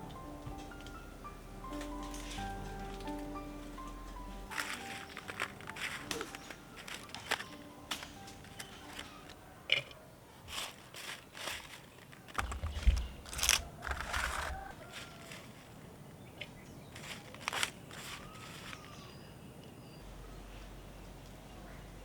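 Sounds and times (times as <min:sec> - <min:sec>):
crisp snaps and crunches: 0:01.8 - 0:09.9, 0:16.4 - 0:19.0.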